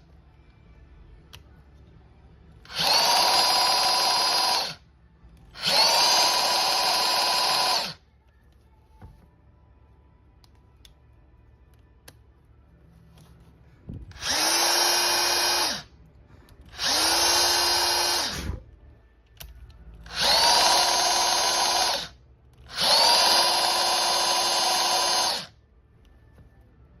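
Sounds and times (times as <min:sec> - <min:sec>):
rotary hammer motor spinning: 0:02.7 - 0:04.8, 0:05.6 - 0:08.0, 0:14.2 - 0:15.9, 0:16.7 - 0:18.6, 0:20.1 - 0:25.5.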